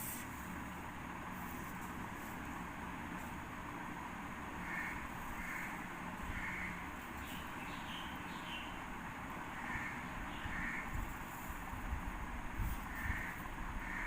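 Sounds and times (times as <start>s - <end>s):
background hiss: 0.0s - 14.0s
crow cawing: 4.6s - 6.9s, 9.6s - 10.9s, 12.9s - 14.0s.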